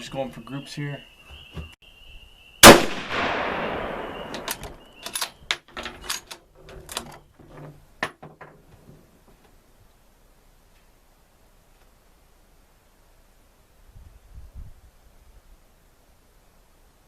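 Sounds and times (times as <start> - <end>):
rifle shot echoing: 2.6 - 5.0
metallic clicks of rifle bolt: 4.3 - 7.2.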